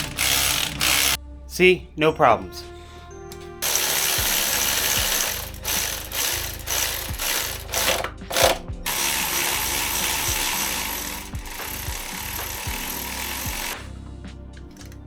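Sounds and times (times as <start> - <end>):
electric ratchet spinning: 0.0 - 1.2, 3.6 - 13.9.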